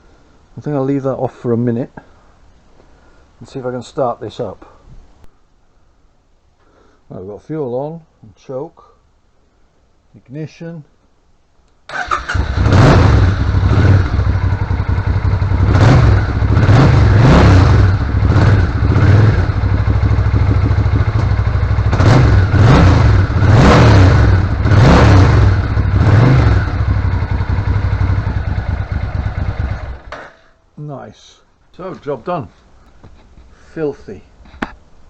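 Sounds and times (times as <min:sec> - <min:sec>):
motorcycle engine revving: 0:11.9 - 0:30.2.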